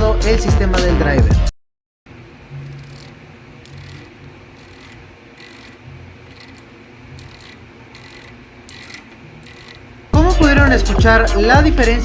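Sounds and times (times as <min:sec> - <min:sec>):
bicycle freehub ratchet clicking: 0:02.6 - 0:09.9.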